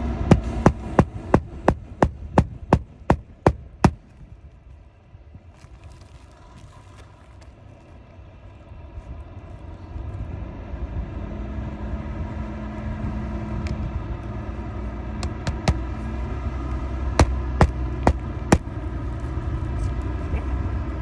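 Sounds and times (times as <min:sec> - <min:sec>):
low engine rumble: 0:00.0 - 0:21.0
hammer driving nails into shingles: 0:00.1 - 0:04.1, 0:15.2 - 0:16.1, 0:17.2 - 0:18.7.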